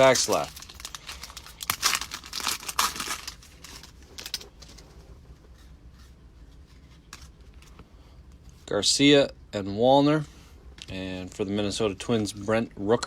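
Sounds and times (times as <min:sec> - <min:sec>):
foil wrapper crinkling: 0:00.0 - 0:04.9
cards rustling: 0:00.0 - 0:05.0.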